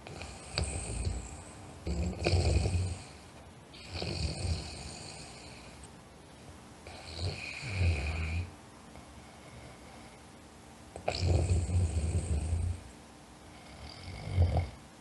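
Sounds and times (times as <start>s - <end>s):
person snoring: 0.0s - 3.2s, 3.8s - 5.8s, 6.9s - 8.5s, 11.0s - 12.8s, 13.5s - 14.8s.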